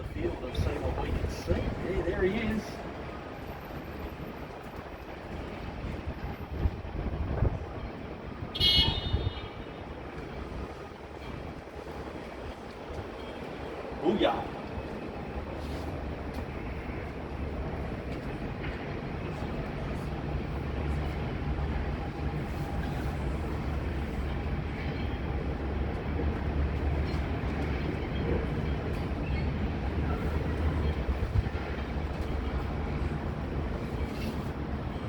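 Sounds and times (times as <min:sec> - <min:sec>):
jet engines rumbling: 0:00.0 - 0:08.4
wind buffeting microphone: 0:00.0 - 0:14.0, 0:14.6 - 0:35.0.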